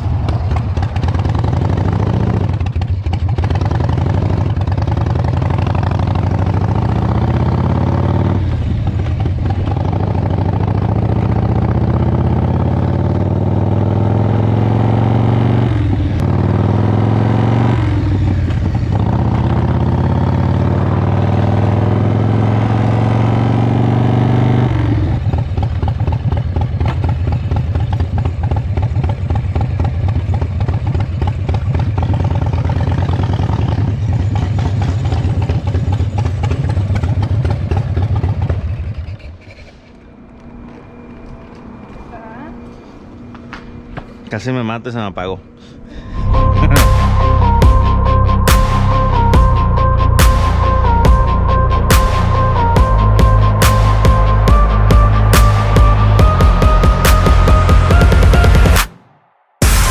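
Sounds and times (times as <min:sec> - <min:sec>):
motorcycle engine revving: 0:00.0 - 0:44.3, 0:46.1 - 0:59.9.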